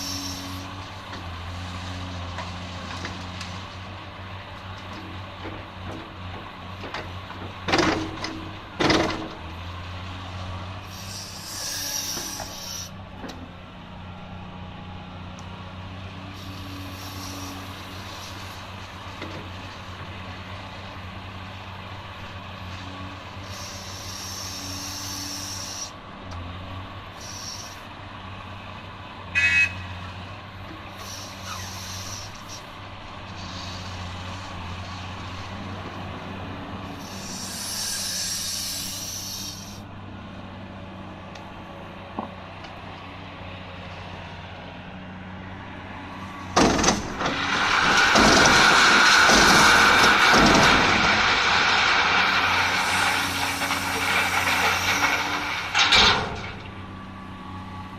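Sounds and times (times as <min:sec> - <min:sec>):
diesel machinery droning: 0:00.0 - 0:57.9
bursts of hiss: 0:10.9 - 0:13.0, 0:16.4 - 0:18.7, 0:23.4 - 0:25.9, 0:27.2 - 0:27.9, 0:31.0 - 0:32.7, 0:36.9 - 0:39.8, 0:47.4 - 0:56.1.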